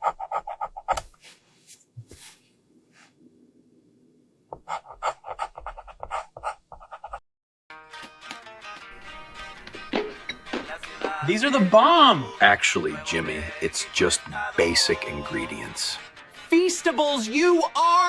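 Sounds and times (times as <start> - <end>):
dog panting rapidly: 0.0 - 1.0, 4.6 - 7.2.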